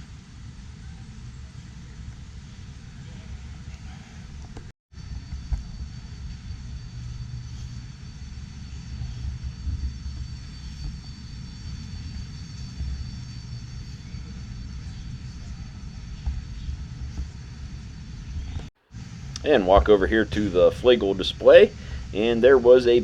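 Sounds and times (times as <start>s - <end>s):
faint high-pitched whine: 0.0s - 23.0s
low rumble of hall noise: 0.0s - 23.0s.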